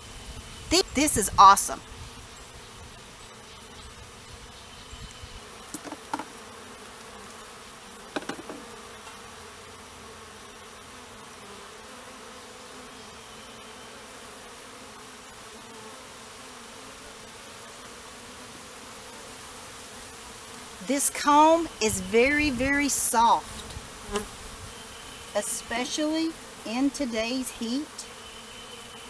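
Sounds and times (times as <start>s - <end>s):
bee swarm buzzing: 0.2s - 29.0s
sharp knocks: 5.7s - 6.3s, 8.1s - 8.7s.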